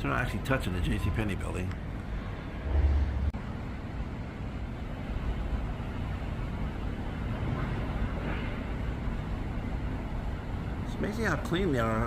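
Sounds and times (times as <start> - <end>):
low outdoor rumble: 0.0 - 12.0.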